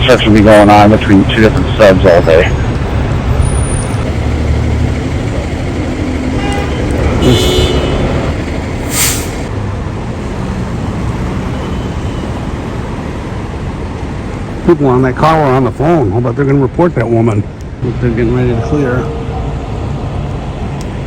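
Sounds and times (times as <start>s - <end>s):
heavy vehicle engine running: 0.0s - 11.6s
street traffic: 0.0s - 21.0s
horn toot: 6.3s - 8.3s
air brake hiss: 8.8s - 9.5s.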